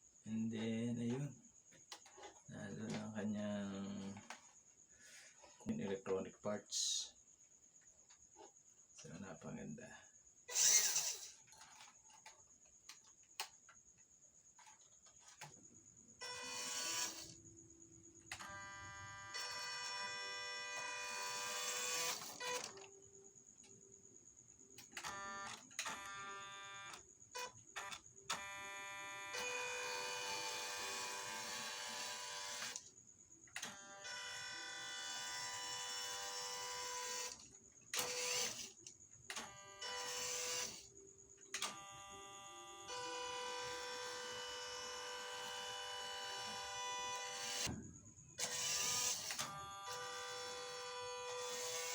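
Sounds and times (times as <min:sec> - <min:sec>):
toy car electric motor whining: 0:10.5 - 0:12.2, 0:16.2 - 0:17.4, 0:18.3 - 0:22.9, 0:24.8 - 0:32.9, 0:33.6 - 0:40.9, 0:41.5 - 0:47.7, 0:48.4 - 0:51.9.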